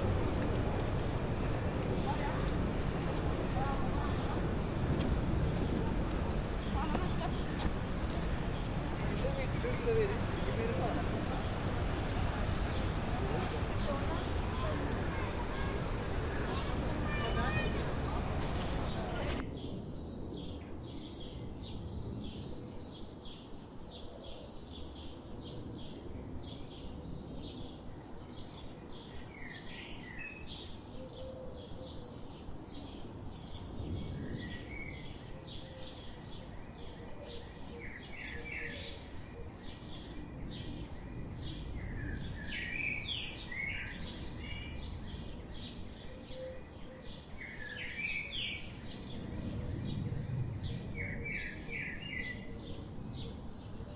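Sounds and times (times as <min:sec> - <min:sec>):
birds chirping: 0:00.0 - 0:19.4
low background noise: 0:00.0 - 0:53.9.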